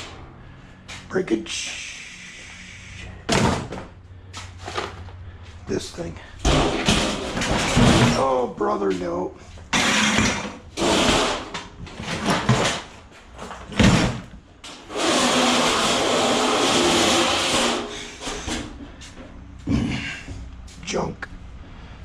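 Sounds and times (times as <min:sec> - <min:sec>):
steady noise: 0:00.0 - 0:03.3.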